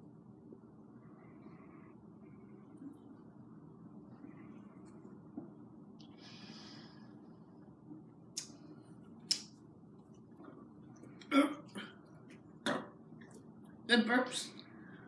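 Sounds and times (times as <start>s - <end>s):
soft breathy hiss: 6.0s - 7.4s
loud burp: 11.3s - 11.9s.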